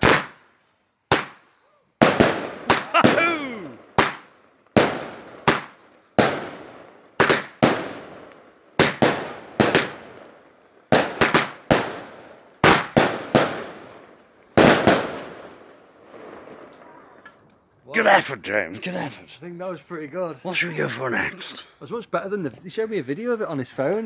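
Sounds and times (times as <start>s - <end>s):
firework bangs: 3.9s - 4.2s.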